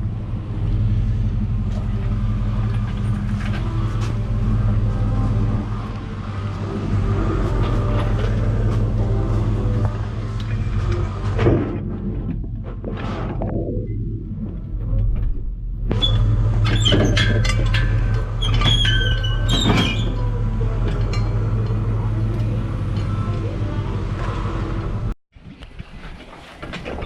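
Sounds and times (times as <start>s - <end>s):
vehicle engine drone: 0.0s - 25.2s
music: 3.6s - 12.8s.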